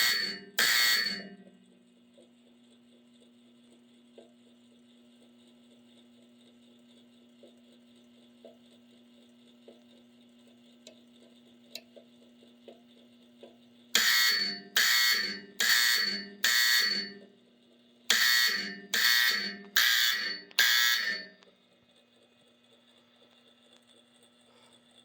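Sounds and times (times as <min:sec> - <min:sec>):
fire alarm bell strokes: 0:00.0 - 0:01.5, 0:14.0 - 0:17.3, 0:18.1 - 0:21.4
low steady hum: 0:00.0 - 0:25.0.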